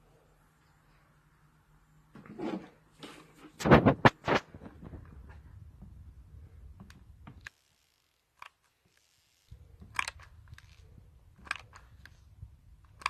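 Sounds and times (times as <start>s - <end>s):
handling clicks and taps: 9.6s - 13.0s.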